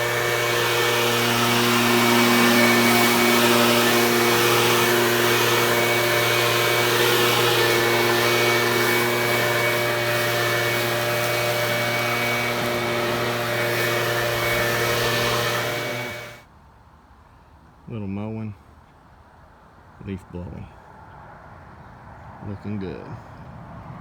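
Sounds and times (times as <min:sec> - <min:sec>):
small gasoline engine running: 0:00.0 - 0:16.4.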